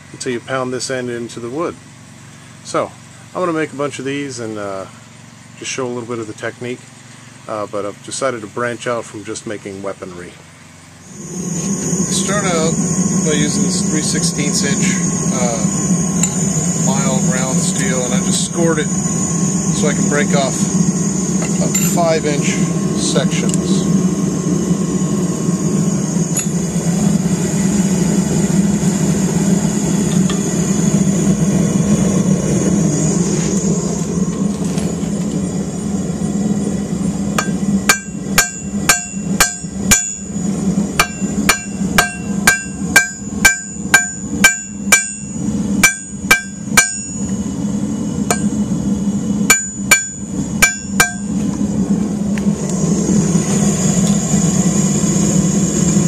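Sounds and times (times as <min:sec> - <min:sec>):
forge drone: 0:10.9 - 0:56.0
hammer ringing on anvil: 0:21.7 - 0:22.0, 0:37.4 - 0:40.3, 0:41.0 - 0:47.4, 0:48.3 - 0:48.6, 0:49.5 - 0:51.4.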